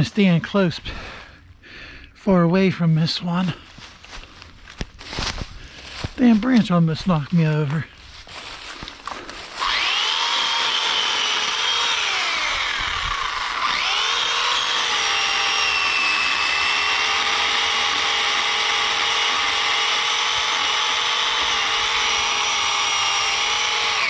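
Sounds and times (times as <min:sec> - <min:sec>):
pole chainsaw cutting branch: 0:08.6 - 0:24.0.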